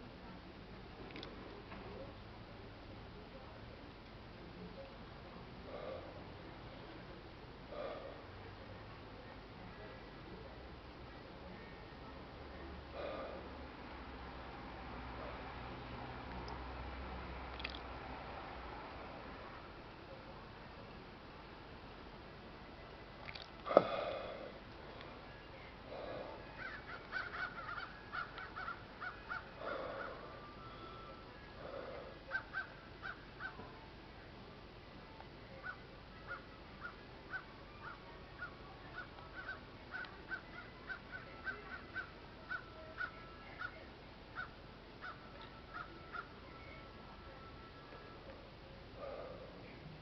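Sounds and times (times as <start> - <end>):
crows cawing: 26.5 - 30.3, 31.6 - 33.6, 35.6 - 43.8, 44.4 - 46.3.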